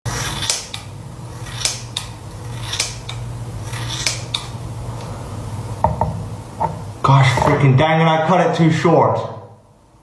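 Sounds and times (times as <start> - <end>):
steady low hum: 0.1 - 10.0
scissors snipping hair: 0.2 - 0.9, 1.5 - 4.6.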